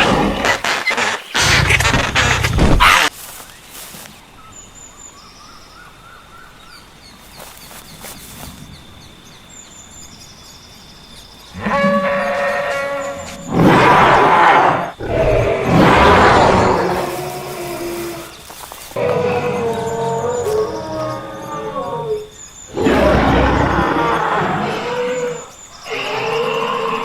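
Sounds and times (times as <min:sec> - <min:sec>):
drawn-out pitched animal call: 0:11.6 - 0:27.0.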